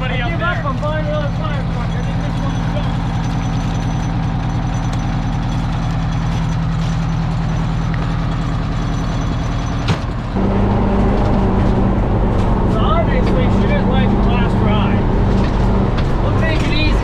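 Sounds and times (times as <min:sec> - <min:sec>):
truck engine running: 0:00.0 - 0:17.0.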